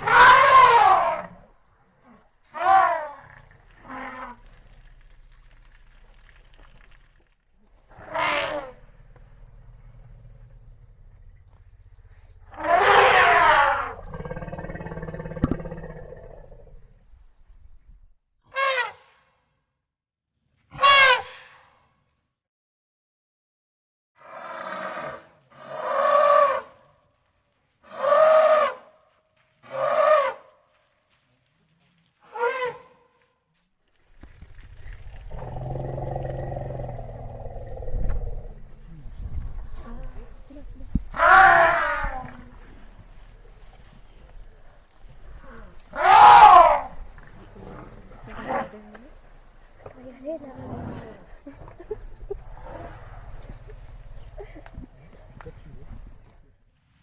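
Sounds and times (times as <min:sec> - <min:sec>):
elephant trumpeting: 0:00.0 - 0:01.3, 0:08.0 - 0:08.8, 0:12.5 - 0:15.5, 0:20.8 - 0:21.5, 0:41.1 - 0:42.3, 0:45.9 - 0:47.0
elephant calling: 0:41.1 - 0:42.6, 0:45.4 - 0:47.8.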